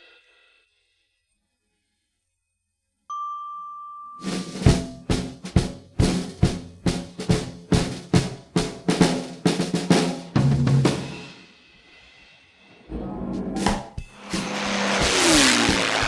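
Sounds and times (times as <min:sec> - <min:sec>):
drum percussion beating: 0:04.2 - 0:11.3, 0:12.9 - 0:16.0.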